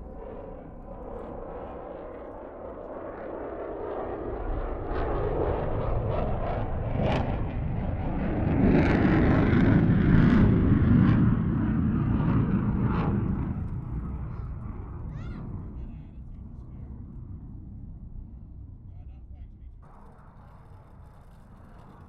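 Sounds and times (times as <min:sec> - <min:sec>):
jet flying past: 0:00.0 - 0:18.8, 0:19.8 - 0:22.0
crackling snaps in jet noise: 0:19.8 - 0:22.0.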